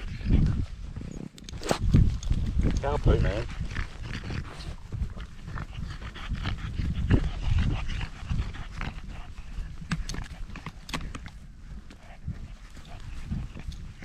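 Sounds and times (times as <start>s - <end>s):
dog panting heavily: 3.2s - 14.0s.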